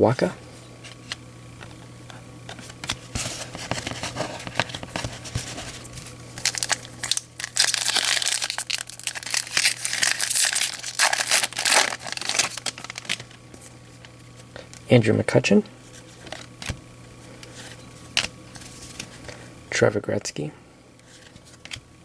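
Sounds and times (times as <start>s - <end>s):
card pack wrapper crinkling: 2.5s - 14.8s.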